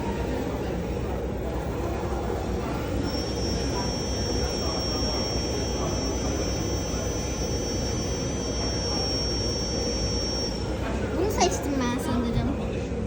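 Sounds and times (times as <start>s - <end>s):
cotton candy machine whirring: 0.0s - 12.7s.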